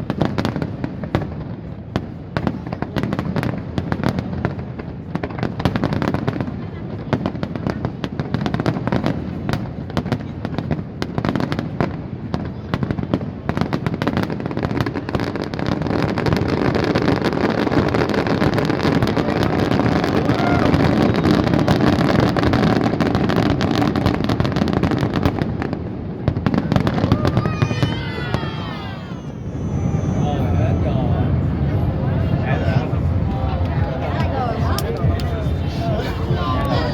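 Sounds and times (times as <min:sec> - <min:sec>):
fireworks crackling and banging: 0:00.0 - 0:36.9.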